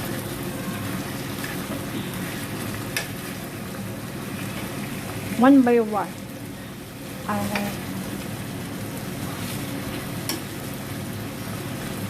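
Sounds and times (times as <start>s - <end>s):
chicken sizzling in a pan: 0.0s - 12.0s
stirring and scraping in pan: 9.1s - 10.5s.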